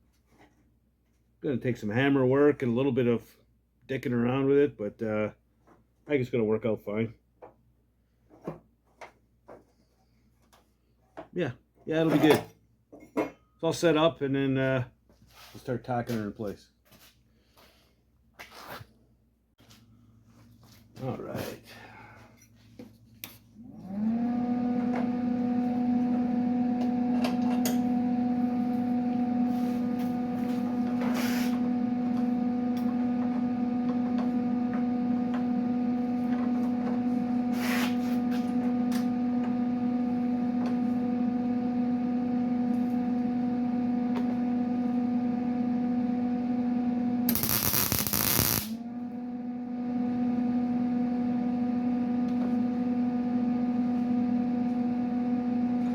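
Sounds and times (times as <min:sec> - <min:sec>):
machine motor humming: 0:47.1 - 0:55.9.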